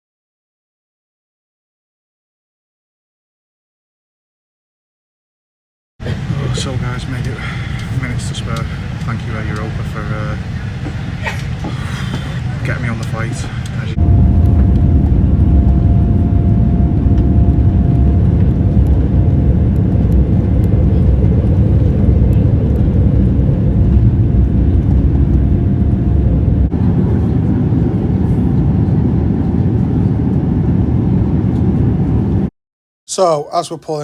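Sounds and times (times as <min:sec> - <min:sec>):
vehicle rumble from inside: 0:06.0 - 0:28.5
faint whine: 0:06.0 - 0:32.4.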